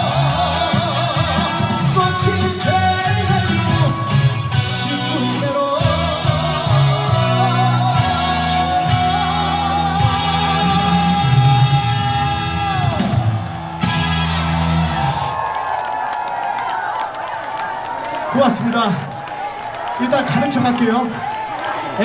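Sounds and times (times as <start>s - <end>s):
man singing: 0.0s - 13.2s
band playing: 0.0s - 16.4s.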